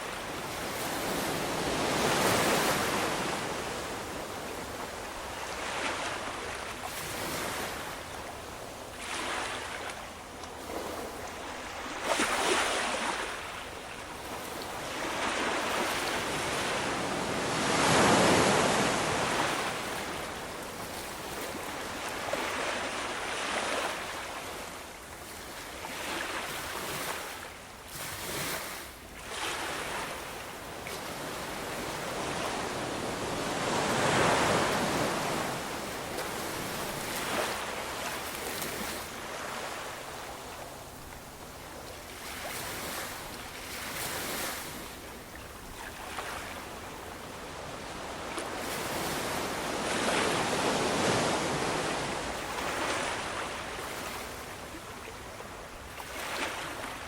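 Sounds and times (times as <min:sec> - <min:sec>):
ocean waves surging: 0:16.2 - 0:20.2, 0:31.5 - 0:40.0.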